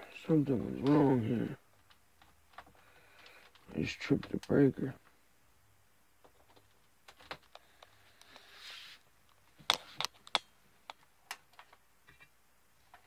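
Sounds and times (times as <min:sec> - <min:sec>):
sharp clicks and light knocks: 0:01.7 - 0:05.2.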